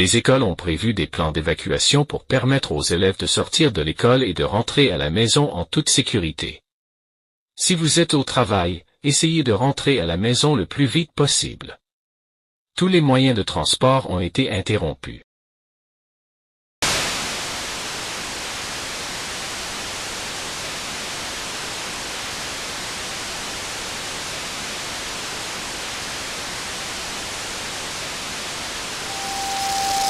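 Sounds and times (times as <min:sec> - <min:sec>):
static hiss: 0:16.8 - 0:30.0.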